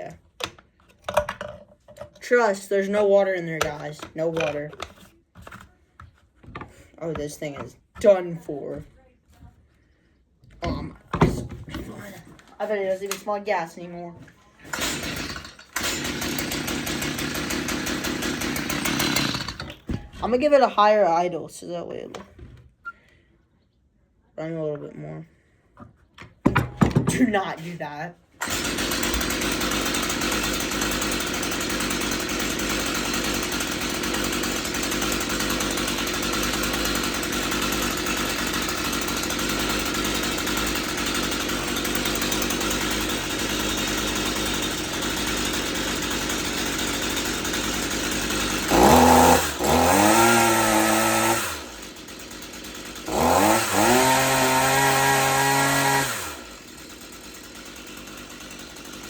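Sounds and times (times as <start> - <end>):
chainsaw idling and revving: 2.2 - 4.8, 14.6 - 20.7, 28.4 - 59.0.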